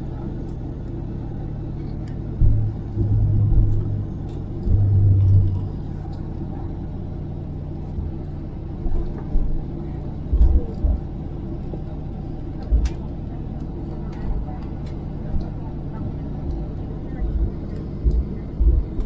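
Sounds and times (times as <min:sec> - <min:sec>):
airliner cabin rumble: 0:00.0 - 0:19.0
low thumps and bumps: 0:02.2 - 0:06.8, 0:08.8 - 0:13.0, 0:16.3 - 0:19.0.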